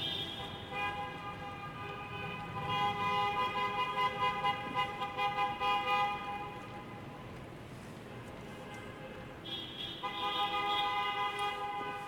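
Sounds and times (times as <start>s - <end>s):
car horns honking: 0.0s - 6.5s, 9.4s - 12.0s
low rumble of traffic: 0.0s - 12.0s.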